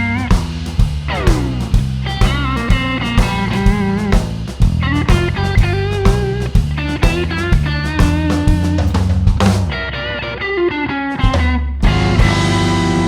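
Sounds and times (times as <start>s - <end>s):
drum kit beat: 0.0s - 10.0s, 11.1s - 13.0s
blues rock band playing: 0.0s - 13.0s
electric guitar bent notes: 1.1s - 4.1s, 9.7s - 13.0s.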